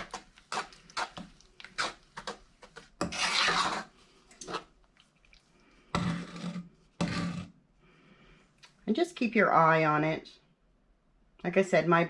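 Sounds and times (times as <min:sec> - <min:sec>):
utensil scraping saucepan bottom: 0:00.0 - 0:04.7, 0:05.9 - 0:07.6.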